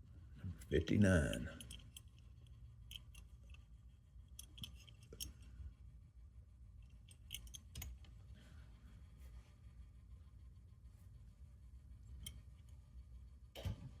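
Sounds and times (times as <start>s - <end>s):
low steady hum: 0.0s - 14.0s
clicks and taps of toy handling: 6.8s - 8.1s.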